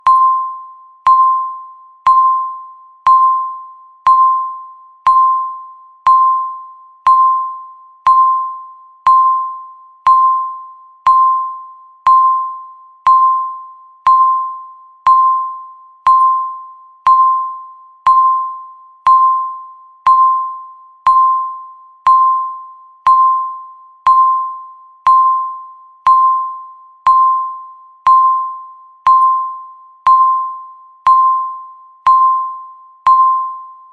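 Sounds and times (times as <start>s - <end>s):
countdown timer beeps: 0.0s - 33.9s.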